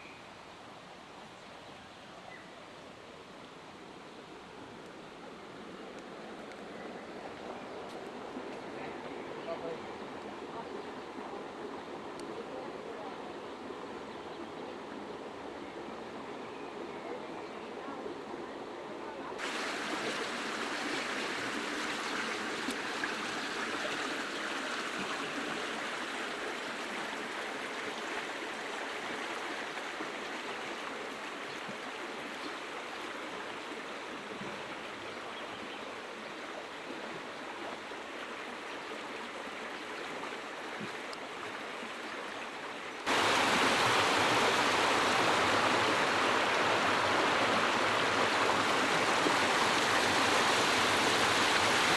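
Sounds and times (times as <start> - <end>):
storm water rushing: 19.4 - 22.0, 43.1 - 51.9.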